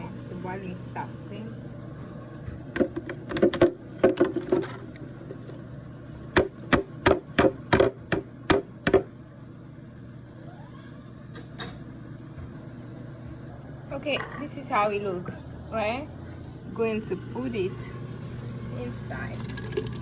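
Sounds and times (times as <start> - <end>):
sharp kitchen knocks: 6.4 - 9.1.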